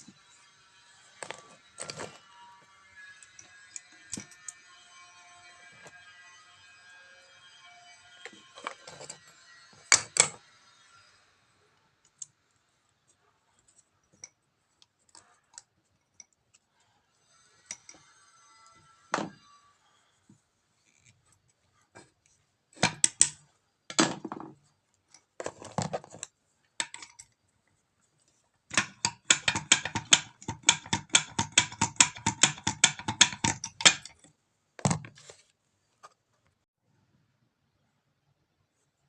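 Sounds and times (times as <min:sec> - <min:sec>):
metal tools knocking and scraping: 0:00.0 - 0:06.3, 0:07.6 - 0:10.5, 0:17.4 - 0:27.4, 0:28.7 - 0:35.3.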